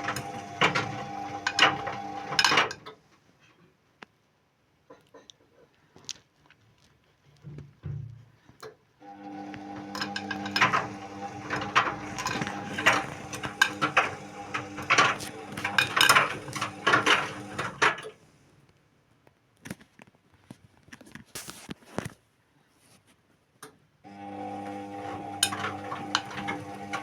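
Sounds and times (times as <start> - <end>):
washing machine drum motor humming: 0.0 - 2.7, 9.0 - 18.2, 24.1 - 27.0.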